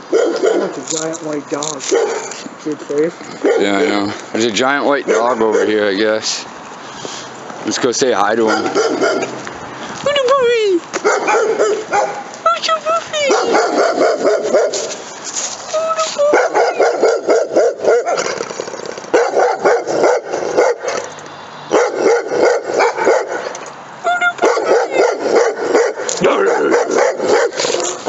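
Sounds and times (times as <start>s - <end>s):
dogs barking: 0.0s - 0.9s, 1.8s - 2.4s, 3.3s - 6.1s, 8.2s - 9.4s, 11.0s - 12.4s, 13.2s - 15.0s, 16.2s - 18.5s, 19.1s - 21.1s, 21.7s - 23.6s, 24.3s - 28.0s.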